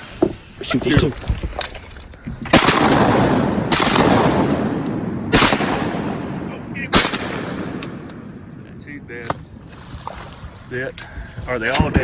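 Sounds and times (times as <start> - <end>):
shotgun blasts with rolling echo: 2.5 - 9.6.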